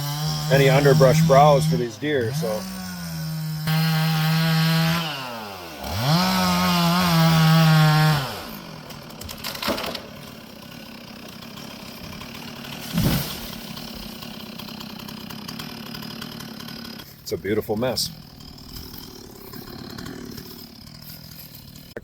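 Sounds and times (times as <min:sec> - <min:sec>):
chainsaw revving: 0:00.0 - 0:22.0
dull thump: 0:12.8 - 0:13.5.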